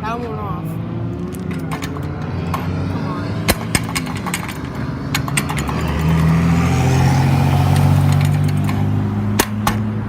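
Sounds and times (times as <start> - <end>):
car engine accelerating past: 0.5 - 10.0
sharp clicks: 3.4 - 6.4.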